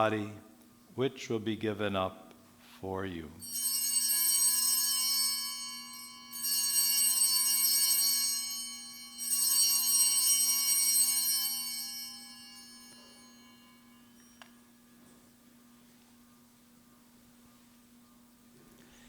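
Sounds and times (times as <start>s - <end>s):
altar bells ringing: 3.4s - 15.4s.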